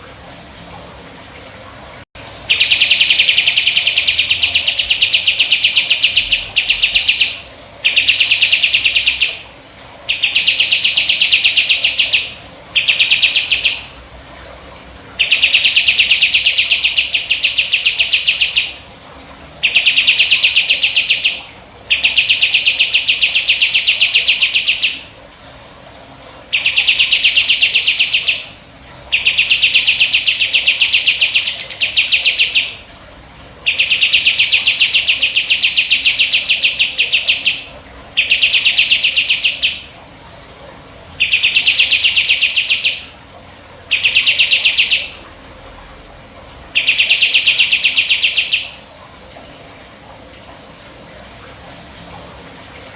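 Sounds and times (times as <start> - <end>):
songbird trilling: 2.5 - 9.4, 10.1 - 13.9, 15.2 - 18.8, 19.6 - 25.0, 26.6 - 28.5, 29.1 - 32.8, 33.7 - 39.9, 41.2 - 43.0, 43.9 - 45.2, 46.8 - 48.8.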